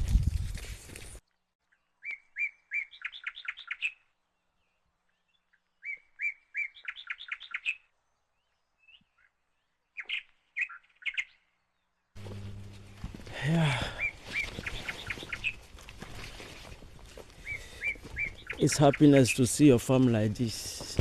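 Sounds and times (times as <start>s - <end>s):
bird chirping: 1.6s - 15.8s, 17.4s - 20.3s.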